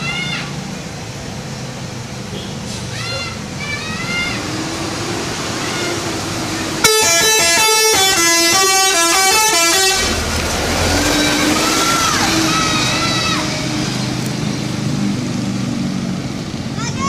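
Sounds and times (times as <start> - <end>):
low engine rumble: 0.0 - 17.0
road noise: 0.0 - 17.0
musical air horn tune: 6.8 - 10.2.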